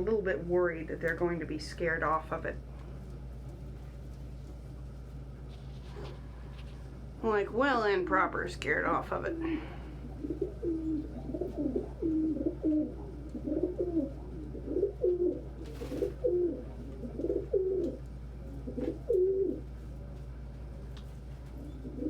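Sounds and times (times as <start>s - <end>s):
pigeons cooing: 9.2s - 19.7s, 21.4s - 22.0s.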